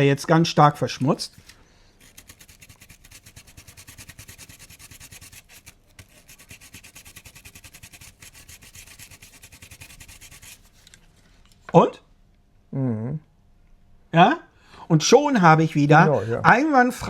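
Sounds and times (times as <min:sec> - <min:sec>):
eraser pen scratching metal: 0:02.0 - 0:10.7.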